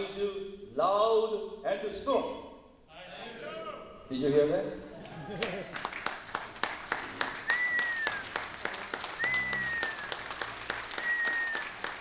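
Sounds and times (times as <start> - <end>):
audience applauding: 5.0 - 12.0
short falling whistles: 7.4 - 8.3, 9.2 - 10.2, 10.9 - 11.8.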